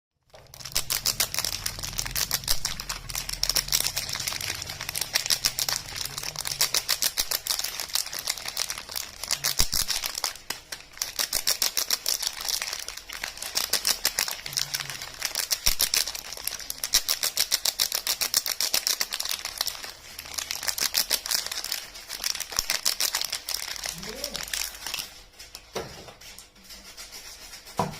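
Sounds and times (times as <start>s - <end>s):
wrappers crinkling: 0.2s - 26.6s.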